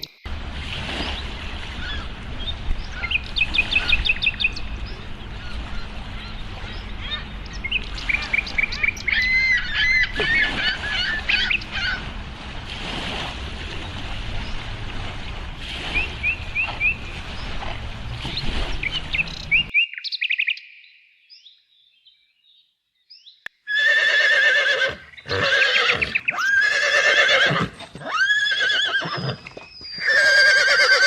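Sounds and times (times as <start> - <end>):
steady low rumble: 0.2 - 19.7
small birds chirping: 1.0 - 12.0, 15.9 - 23.5.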